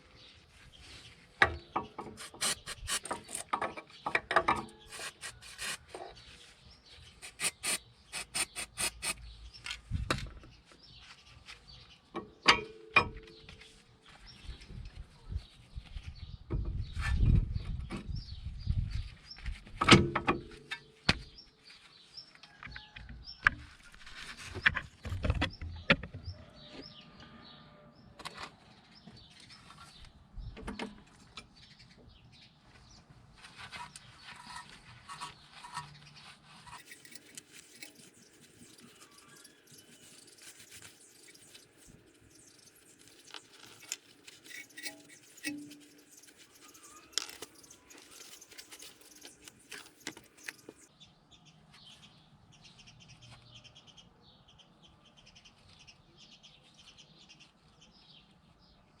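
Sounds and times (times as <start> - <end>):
metal tools knocking and clinking: 12.2 - 13.4
faint bird chirps: 35.2 - 58.3.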